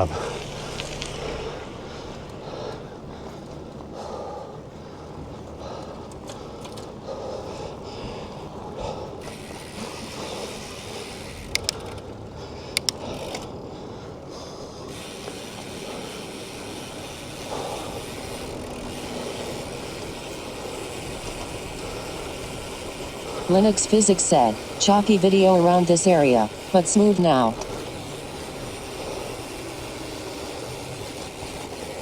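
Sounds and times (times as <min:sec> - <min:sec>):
bicycle freewheel ticking: 0:00.0 - 0:04.4, 0:05.1 - 0:32.0
road noise: 0:00.0 - 0:32.0
sharp clicks: 0:11.5 - 0:12.0, 0:12.7 - 0:13.5.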